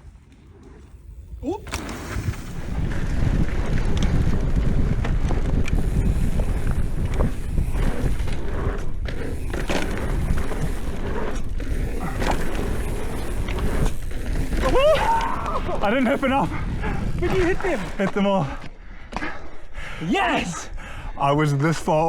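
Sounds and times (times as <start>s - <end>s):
wind rumbling on microphone: 0.0s - 18.1s
bike tyre noise on dirt: 0.0s - 19.5s
bike knocks and rattles: 1.6s - 18.0s.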